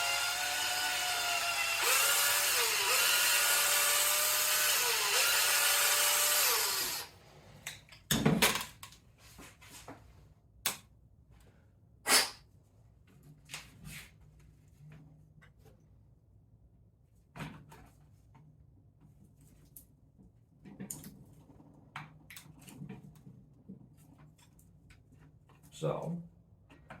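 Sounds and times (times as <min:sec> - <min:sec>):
power drill boring: 0:00.0 - 0:07.2.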